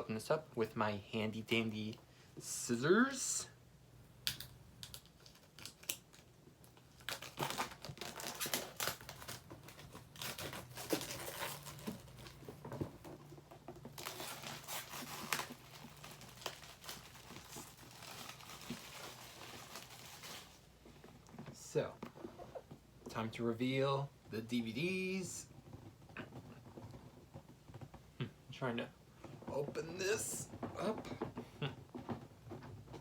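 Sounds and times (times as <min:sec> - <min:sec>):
wrapping crinkling and tearing: 0:04.3 - 0:20.8.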